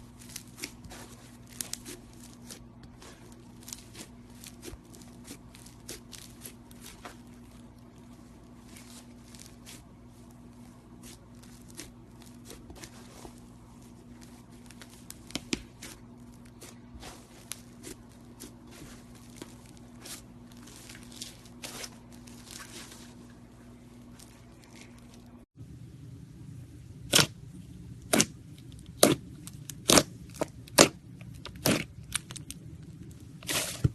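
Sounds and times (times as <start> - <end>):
steady low hum: 0.0 - 33.9.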